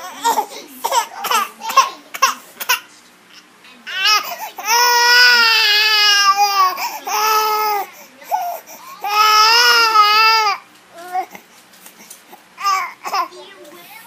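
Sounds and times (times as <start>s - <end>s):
baby crying: 0.0s - 2.9s, 3.9s - 11.4s, 12.6s - 13.3s.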